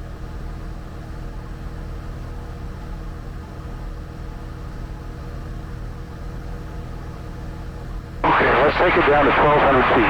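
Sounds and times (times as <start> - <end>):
propeller plane engine droning: 8.2 - 10.0.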